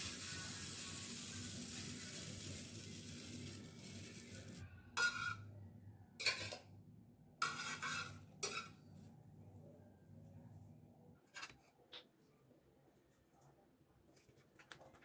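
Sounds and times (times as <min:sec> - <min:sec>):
metal utensil scraping cookware: 0:00.0 - 0:05.4, 0:06.2 - 0:06.6, 0:07.4 - 0:08.8
sizzling: 0:00.0 - 0:05.4, 0:07.4 - 0:08.8.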